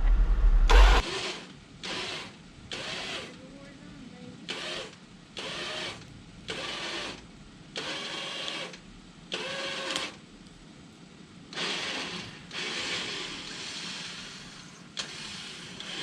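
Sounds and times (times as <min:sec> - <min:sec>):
winch motor whirring: 0:11.6 - 0:16.0.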